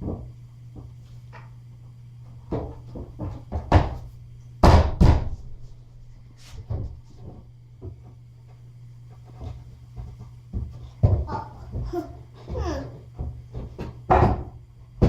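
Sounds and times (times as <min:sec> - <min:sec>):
bed frame knocks and thuds: 0:02.5 - 0:05.4, 0:09.4 - 0:15.0.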